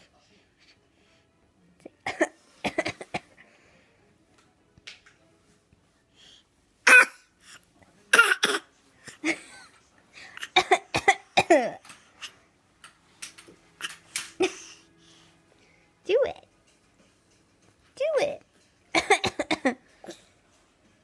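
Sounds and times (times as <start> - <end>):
adult coughing: 2.0 - 3.4, 8.1 - 9.4, 10.4 - 11.8, 19.0 - 20.2
child pretend coughing: 6.9 - 7.2, 8.1 - 8.7, 19.0 - 19.8.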